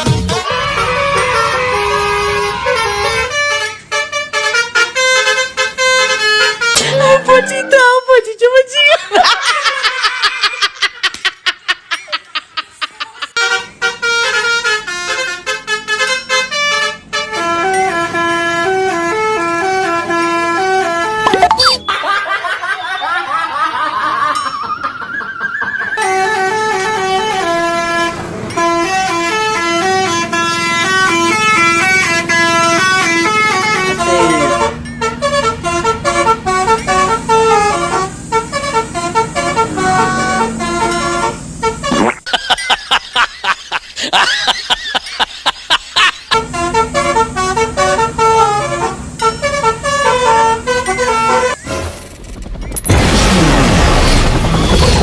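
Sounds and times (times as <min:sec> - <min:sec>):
musical bus horn playing a tune: 0:00.0 - 0:08.0, 0:13.4 - 0:21.8, 0:25.6 - 0:42.2, 0:46.3 - 0:52.0
rapid high-pitched pulsing honks: 0:00.1 - 0:08.1, 0:13.4 - 0:21.9, 0:25.6 - 0:42.1, 0:46.3 - 0:52.0.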